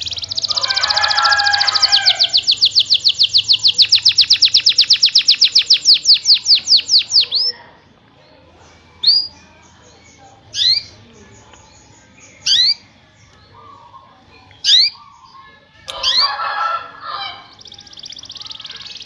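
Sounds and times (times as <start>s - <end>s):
canary rising chirps: 0.0s - 7.6s, 13.6s - 19.0s
canary trilling: 0.0s - 7.7s, 9.0s - 19.0s.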